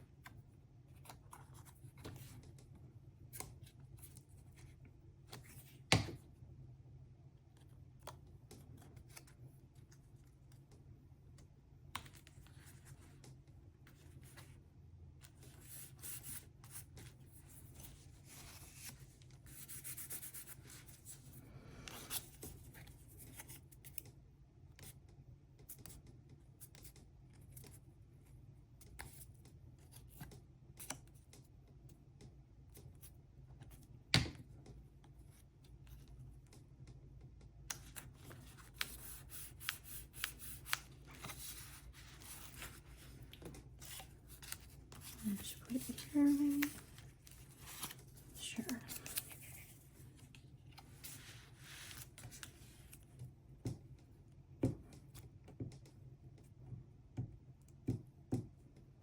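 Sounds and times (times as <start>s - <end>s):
cardstock rubbing and rustling: 37.9s - 53.0s.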